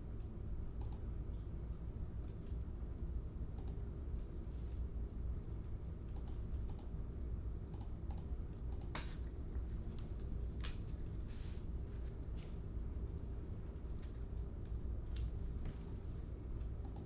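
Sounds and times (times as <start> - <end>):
steady low hum: 0.0 - 17.0
keyboard keystrokes and clicks: 3.6 - 3.8, 5.5 - 6.9, 7.7 - 9.0, 16.6 - 17.0.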